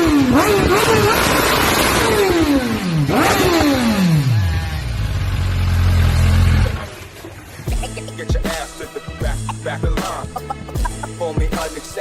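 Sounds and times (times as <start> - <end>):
motorcycle engine revving: 0.0 - 7.2.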